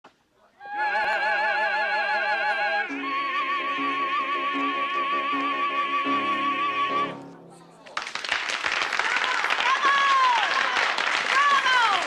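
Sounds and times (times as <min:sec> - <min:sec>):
operatic singing with vibrato: 0:00.6 - 0:07.3
musical accompaniment: 0:02.9 - 0:08.0.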